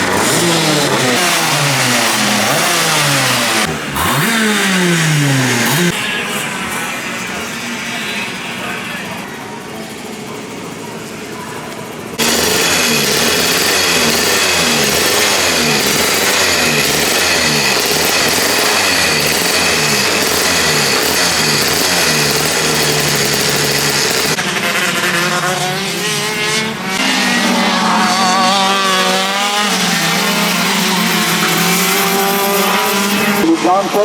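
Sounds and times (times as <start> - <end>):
go-kart engines revving: 0.0 - 34.0
karts passing: 0.0 - 34.0.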